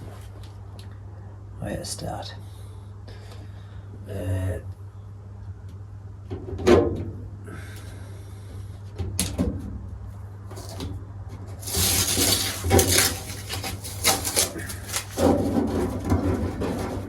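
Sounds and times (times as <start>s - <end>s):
steady low hum: 0.0s - 17.0s
knocks and clatters of handling: 10.5s - 17.0s
scraping noise: 11.5s - 17.0s.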